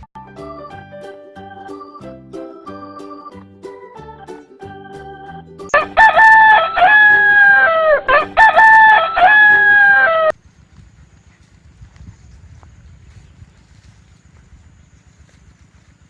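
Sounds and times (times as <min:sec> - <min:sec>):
electronic keyboard music: 0:00.0 - 0:10.3
rooster crowing: 0:05.8 - 0:10.4.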